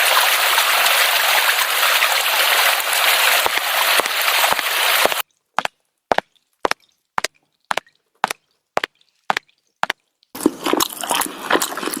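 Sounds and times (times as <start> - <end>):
dense crackling noise: 3.2 - 5.2.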